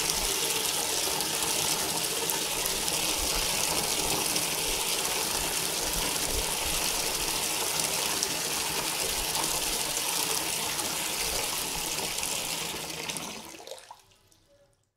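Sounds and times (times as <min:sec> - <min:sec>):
tap water gushing into a bucket: 0:00.0 - 0:14.2.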